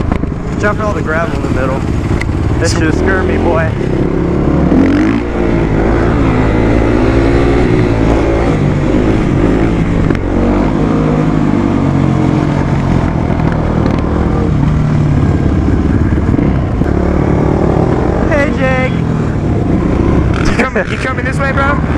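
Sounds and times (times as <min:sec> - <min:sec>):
wind rumble on microphone: 0:00.0 - 0:21.2
motorcycle engine accelerating: 0:00.0 - 0:21.9.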